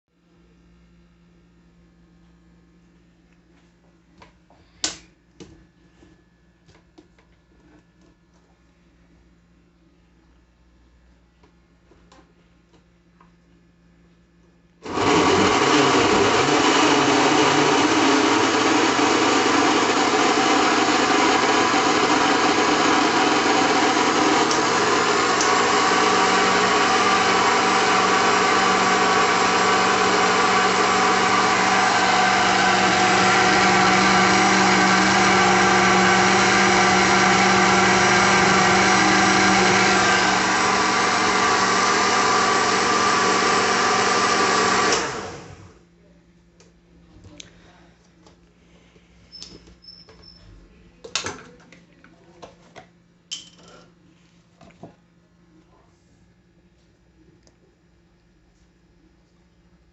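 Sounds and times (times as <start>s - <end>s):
blender motor running: 14.8s - 45.8s.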